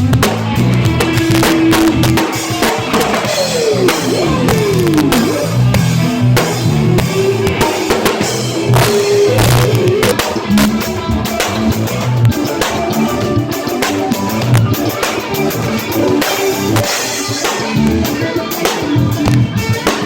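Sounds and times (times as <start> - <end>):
band music: 0.0 - 20.0
falling pitch slides: 3.4 - 10.2.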